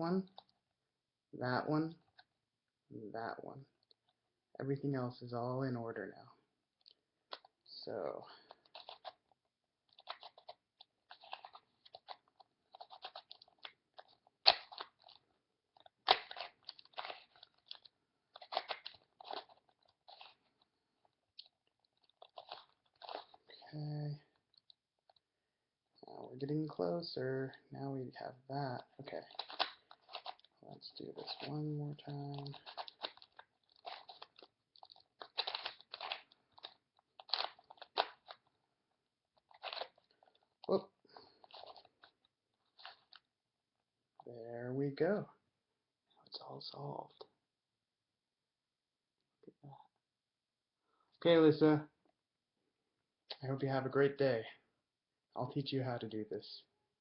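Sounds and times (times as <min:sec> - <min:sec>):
puzzle cube plastic clicks: 0:08.5 - 0:09.2, 0:10.0 - 0:15.2, 0:29.1 - 0:38.4
sharp plastic clacks: 0:29.2 - 0:30.5.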